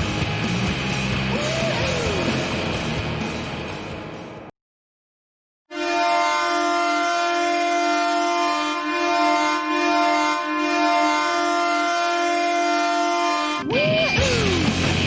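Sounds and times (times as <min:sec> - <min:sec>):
hockey goal horn blast: 0:05.7 - 0:13.7.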